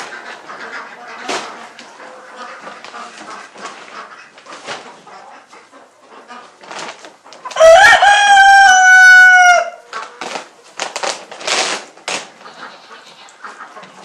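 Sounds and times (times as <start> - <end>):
faint rustles and scrapes: 0.0 - 7.3
rooster crowing: 7.6 - 9.9.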